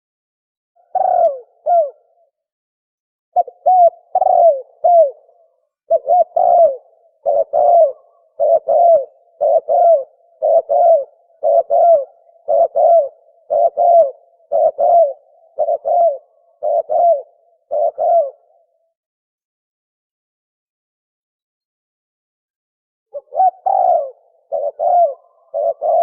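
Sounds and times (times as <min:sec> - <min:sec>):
dove cooing: 0:00.8 - 0:02.4, 0:03.4 - 0:18.9, 0:23.1 - 0:26.0.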